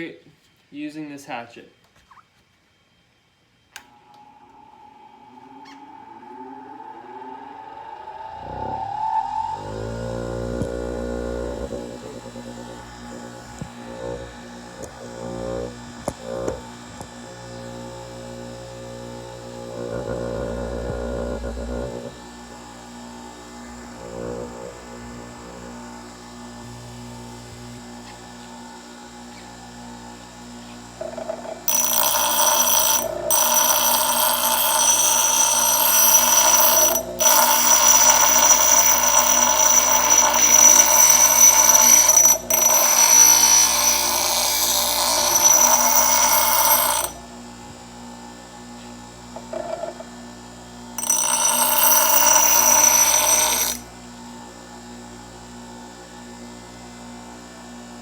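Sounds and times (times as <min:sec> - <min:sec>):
blade grinding screech: 0:04.8 - 0:17.0, 0:31.0 - 0:47.2, 0:51.0 - 0:53.9
grinder motor humming: 0:08.3 - 0:54.4.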